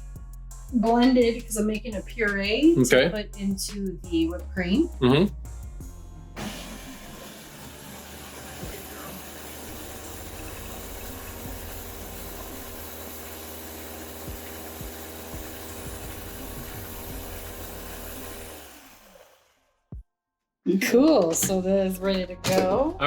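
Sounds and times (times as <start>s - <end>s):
electric blender running: 6.4s - 19.8s.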